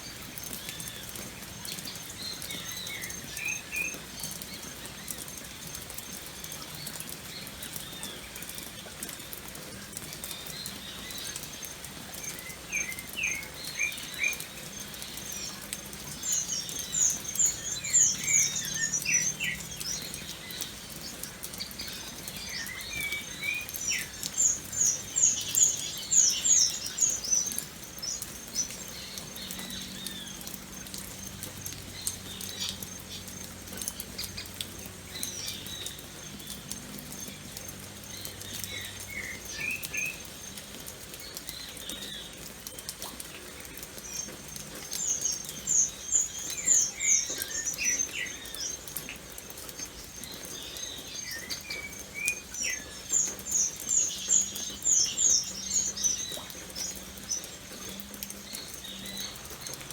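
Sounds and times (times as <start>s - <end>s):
birds chirping: 0.0s - 59.9s
rain pattering and dripping: 0.0s - 59.9s.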